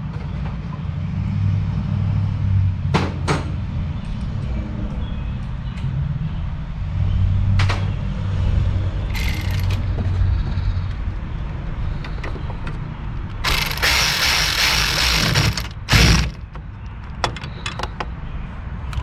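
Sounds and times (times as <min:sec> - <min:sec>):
ratchet and socket turning: 0:09.1 - 0:09.8, 0:13.4 - 0:16.5.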